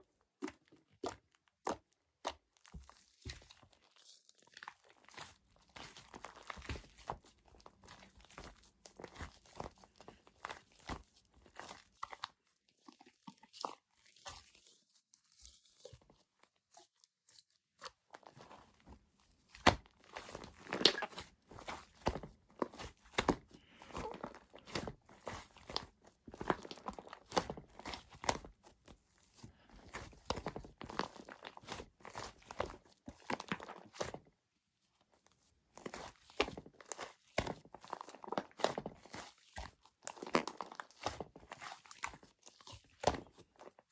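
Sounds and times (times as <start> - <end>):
foam crunching and crackling: 19.5 - 34.2.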